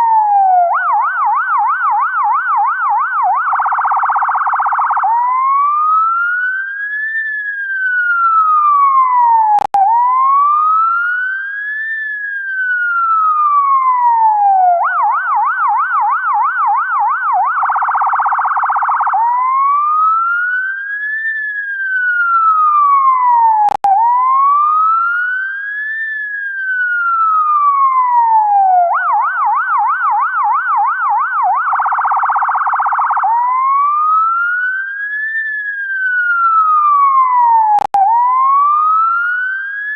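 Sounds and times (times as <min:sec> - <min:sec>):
ambulance siren: 0:00.0 - 0:39.9
click: 0:23.7 - 0:23.9.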